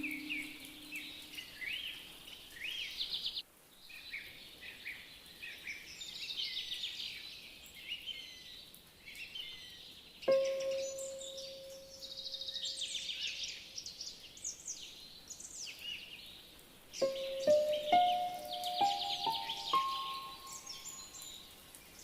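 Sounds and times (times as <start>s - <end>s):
steady low tone: 0.0s - 1.4s
small birds chirping: 0.0s - 22.0s.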